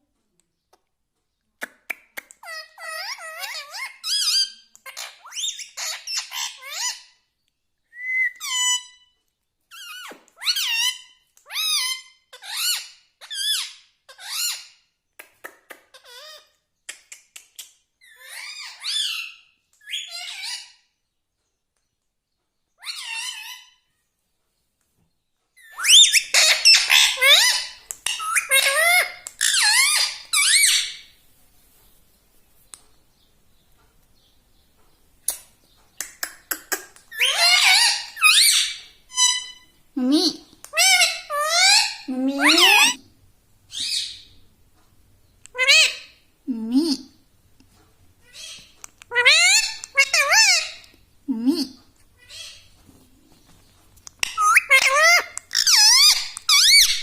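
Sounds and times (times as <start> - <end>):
parakeet squeaky calls: 2.4 - 7.2, 8.4 - 9.0, 9.7 - 14.7, 15.9 - 16.5, 18.0 - 20.8, 22.8 - 23.8, 25.6 - 31.1, 37.1 - 39.7, 40.7 - 43.0, 43.7 - 44.3, 45.5 - 46.2, 48.2 - 50.8, 52.2 - 52.7, 54.2 - 57.0.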